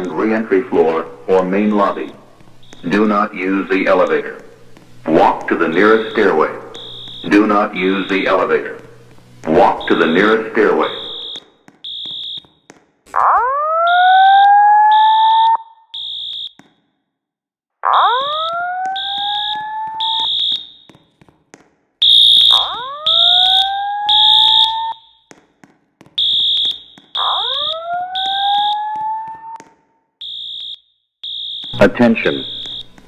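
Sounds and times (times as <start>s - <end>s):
rising alarm whoops: 9.6s - 12.4s, 13.3s - 16.5s, 17.9s - 20.9s, 22.0s - 25.2s, 26.2s - 29.6s, 30.2s - 32.8s.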